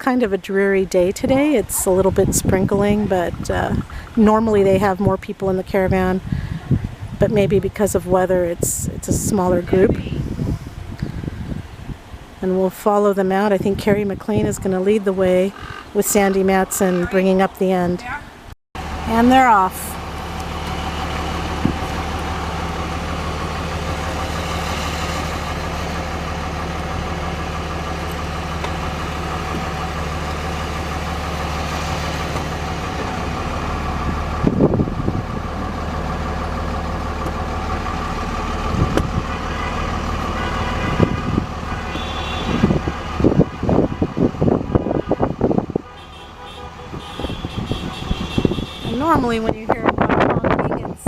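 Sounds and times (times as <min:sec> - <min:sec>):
car engines running: 0:00.0 - 0:51.0
car horn honks: 0:39.2 - 0:42.8, 0:44.8 - 0:49.2.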